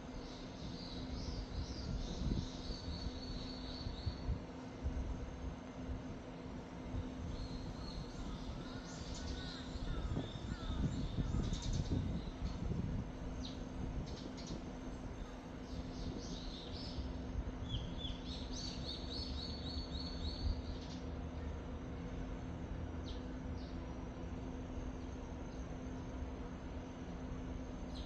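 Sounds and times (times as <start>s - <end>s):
low rumble of wind: 0.0s - 28.0s
small birds chirping: 0.2s - 4.3s, 7.3s - 21.2s.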